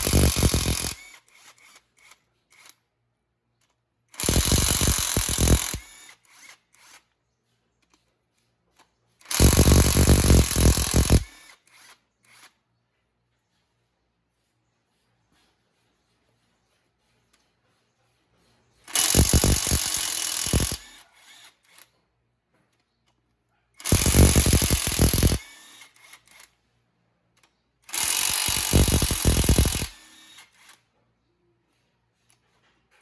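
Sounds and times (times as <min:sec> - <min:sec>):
cordless impact wrench running: 0:00.0 - 0:01.8, 0:04.2 - 0:07.0, 0:09.2 - 0:12.5, 0:18.9 - 0:21.8, 0:23.8 - 0:26.5, 0:27.9 - 0:30.7.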